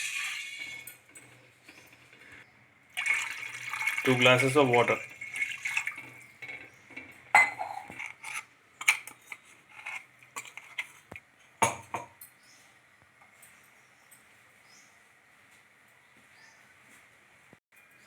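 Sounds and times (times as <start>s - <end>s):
utensils clinking against cooking pot: 0.0s - 2.4s, 3.0s - 12.4s.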